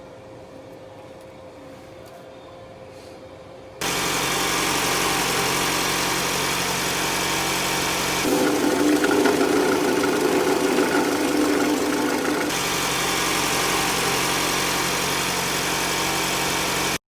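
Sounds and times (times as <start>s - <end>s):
car engine idling: 3.8s - 17.0s.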